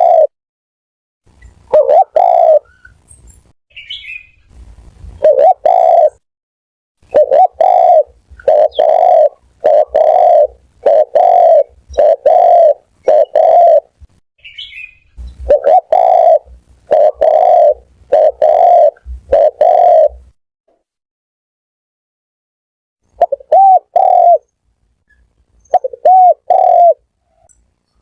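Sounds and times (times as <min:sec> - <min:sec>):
dove cooing: 0:00.0 - 0:00.3, 0:01.7 - 0:02.7, 0:05.2 - 0:06.2, 0:07.0 - 0:14.0, 0:15.2 - 0:20.3, 0:23.2 - 0:24.5, 0:25.7 - 0:27.1
faint high bird chirp: 0:01.4 - 0:04.5, 0:14.4 - 0:15.7, 0:24.4 - 0:28.0.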